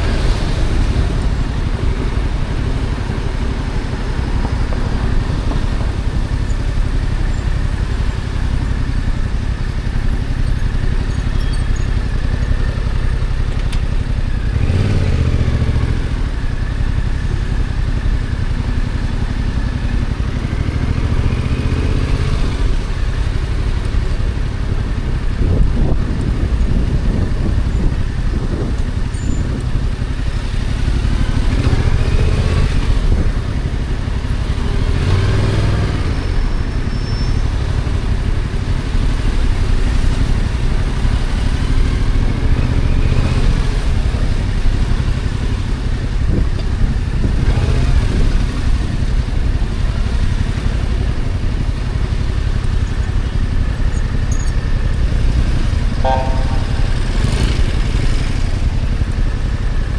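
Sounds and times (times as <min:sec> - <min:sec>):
motorcycle engine revving: 0:00.0 - 0:36.2, 0:51.7 - 0:59.9.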